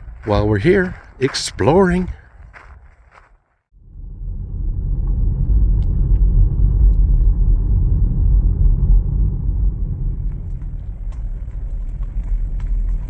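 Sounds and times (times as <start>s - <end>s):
car road and engine rumble: 3.8s - 13.0s.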